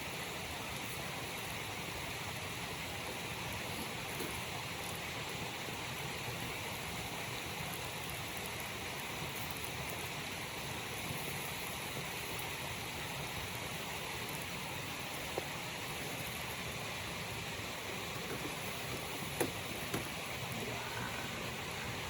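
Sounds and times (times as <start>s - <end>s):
waterfall rushing: 12.7s - 22.0s.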